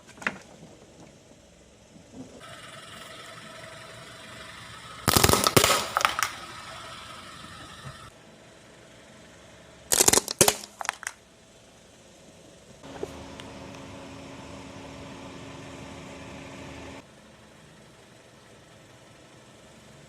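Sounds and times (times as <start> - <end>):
steady low hum: 0.6 - 18.5
plastic and glass cracking: 5.1 - 6.3, 9.9 - 11.2.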